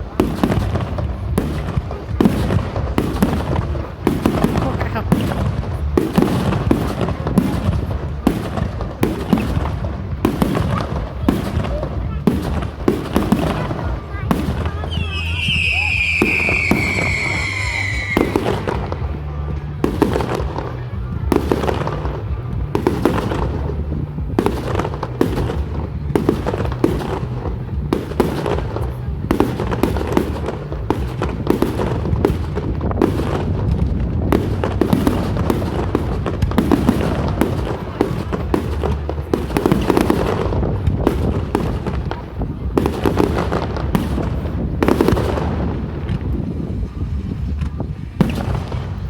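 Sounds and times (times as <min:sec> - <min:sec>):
fireworks banging and crackling: 0:00.0 - 0:49.0
firework whistle falling in pitch: 0:14.9 - 0:18.6.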